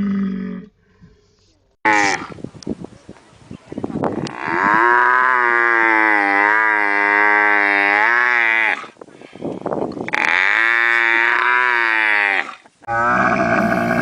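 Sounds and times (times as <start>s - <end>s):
camel bellowing: 10.1s - 14.0s
camel grunting: 10.1s - 14.0s.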